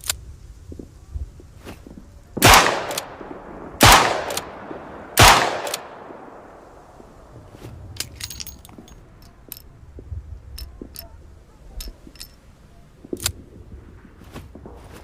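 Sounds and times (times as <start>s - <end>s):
revolver metallic clicks: 2.4s - 3.2s, 3.8s - 4.6s, 5.2s - 6.2s.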